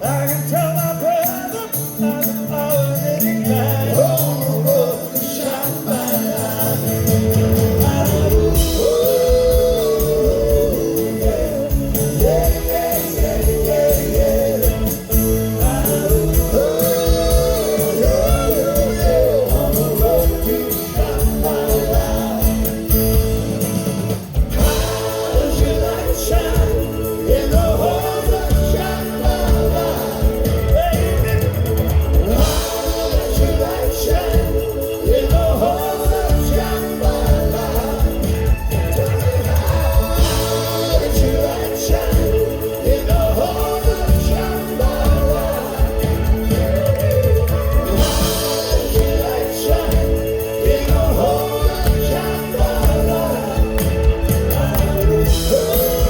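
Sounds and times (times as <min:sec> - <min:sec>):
rock band music with singing: 0:00.0 - 0:56.0.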